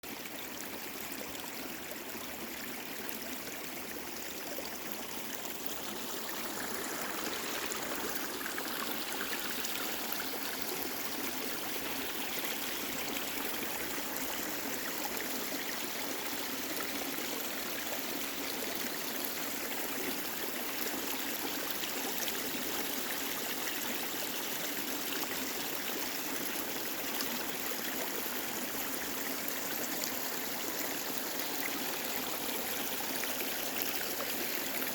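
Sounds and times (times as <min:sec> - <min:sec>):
stream babbling and trickling: 0:00.0 - 0:34.9.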